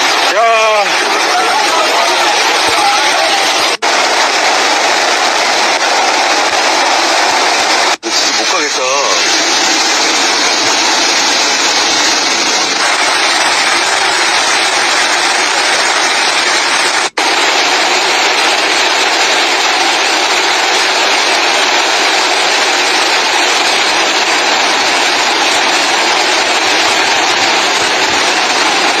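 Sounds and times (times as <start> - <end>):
flood water rushing: 0.0 - 29.0.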